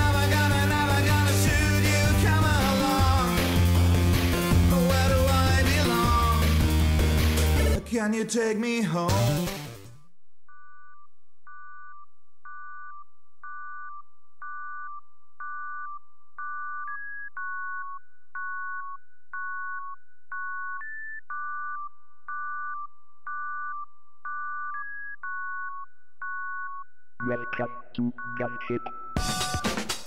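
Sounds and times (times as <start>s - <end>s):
synthesizer beeping melody: 12.5s - 30.0s.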